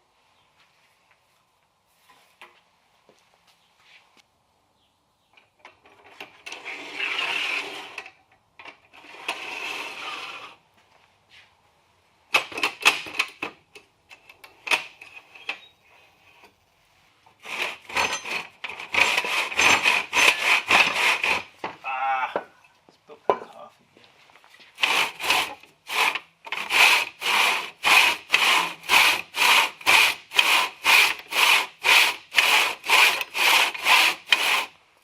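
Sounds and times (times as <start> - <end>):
tool scraping wood: 5.9 - 8.2, 8.9 - 10.6, 17.3 - 21.8, 24.6 - 34.8.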